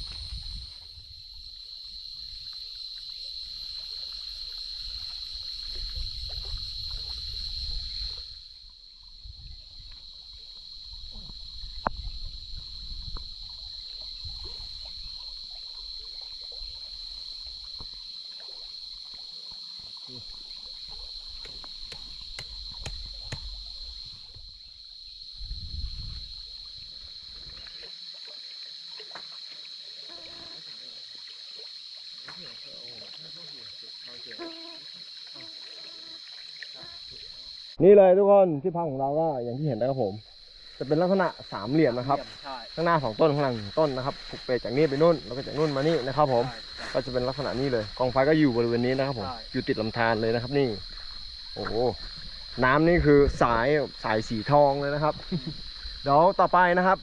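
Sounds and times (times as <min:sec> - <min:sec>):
high-pitched insect drone: 0:00.0 - 0:37.8
stream water running: 0:00.0 - 0:57.0
sharp clicks: 0:21.4 - 0:23.6
low microphone rumbles: 0:25.3 - 0:26.4.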